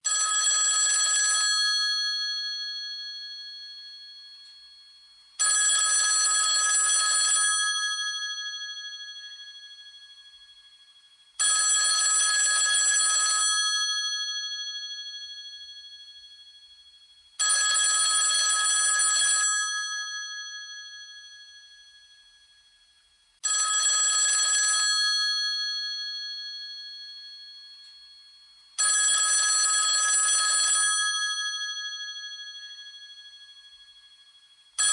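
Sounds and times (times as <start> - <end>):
old telephone bell ringing: 0.0 - 10.7, 11.4 - 22.4, 23.4 - 34.9.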